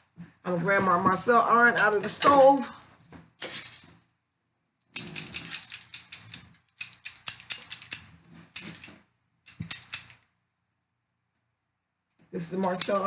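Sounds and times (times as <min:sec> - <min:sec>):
metal rattling and clinking: 0:04.9 - 0:10.2.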